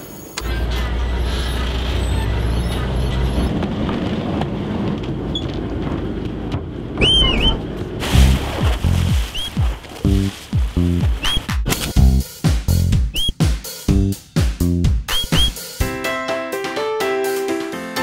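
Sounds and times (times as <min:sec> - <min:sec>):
boat engine rumbling: 0:00.1 - 0:13.3.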